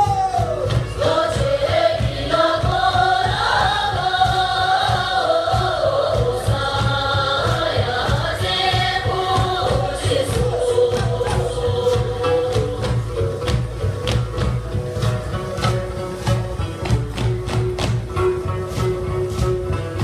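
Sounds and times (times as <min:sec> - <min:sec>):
group singing: 0:00.3 - 0:14.2.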